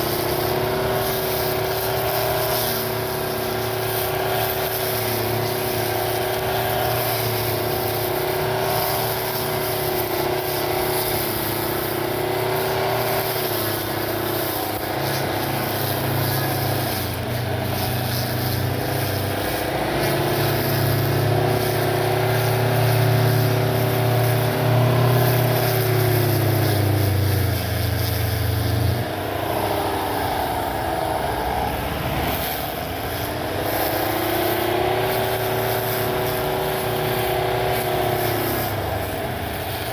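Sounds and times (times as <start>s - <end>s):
electric lawn mower motor hum: 0.0s - 39.9s.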